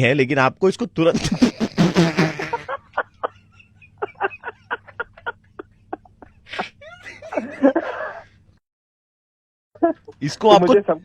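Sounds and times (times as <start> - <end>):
fart sound effect: 1.2 - 2.7.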